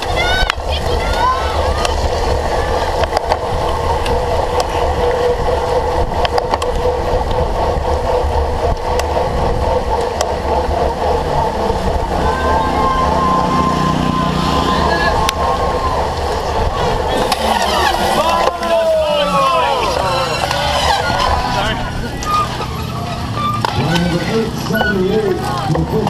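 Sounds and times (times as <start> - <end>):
wind rumble on microphone: 0.0 - 17.3
bike tyre and drivetrain noise: 0.0 - 26.0
thin steady whine: 0.0 - 26.0
sharp clicks and knocks: 6.2 - 8.0, 8.6 - 11.5.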